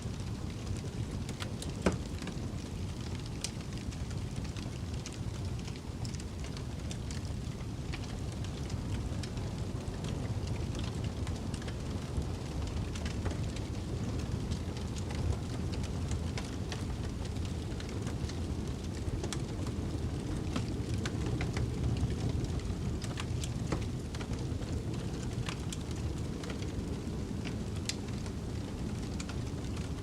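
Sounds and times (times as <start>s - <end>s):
snowstorm wind rumbling: 0.0s - 30.0s
wood fire crackling and popping: 0.0s - 30.0s.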